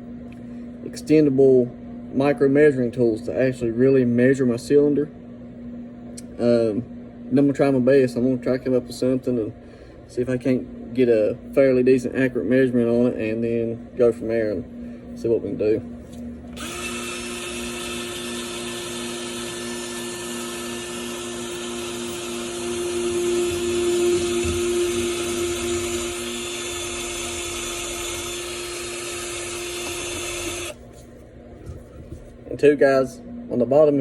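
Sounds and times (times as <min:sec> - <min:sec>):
electric drill whine: 0:16.5 - 0:30.8.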